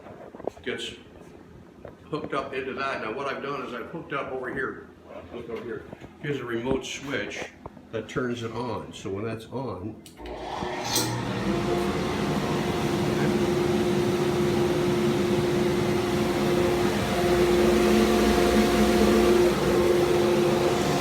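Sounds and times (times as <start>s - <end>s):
dust collector motor humming: 10.2s - 21.0s.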